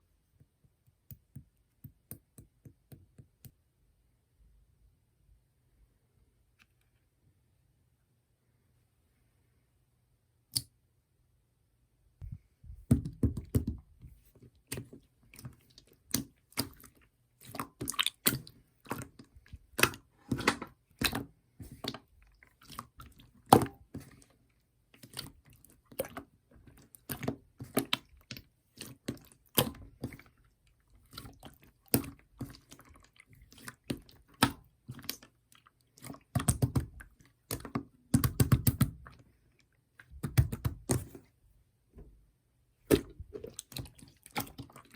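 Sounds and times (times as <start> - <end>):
slime squelching: 12.9 - 41.4, 42.8 - 44.9.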